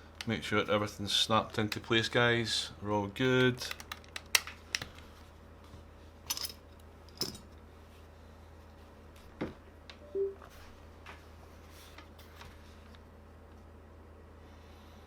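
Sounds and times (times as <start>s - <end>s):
short tone: 10.0s - 10.5s.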